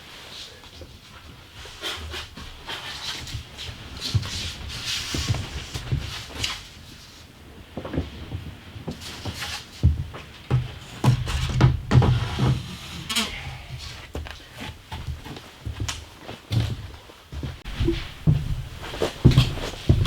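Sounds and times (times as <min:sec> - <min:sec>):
wooden knocks and scrapes: 0:07.8 - 0:15.9
heavy thumps: 0:09.8 - 0:12.8.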